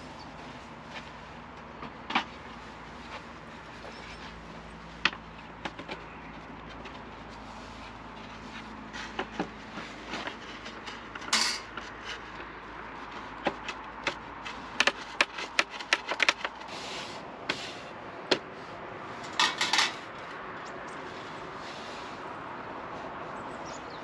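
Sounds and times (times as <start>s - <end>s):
hard objects clicking and knocking: 13.4s - 16.7s.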